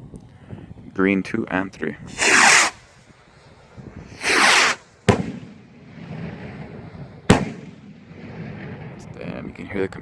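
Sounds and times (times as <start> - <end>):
firework bangs: 2.1 - 2.8, 4.1 - 9.1
firework rocket whooshing: 2.1 - 9.0.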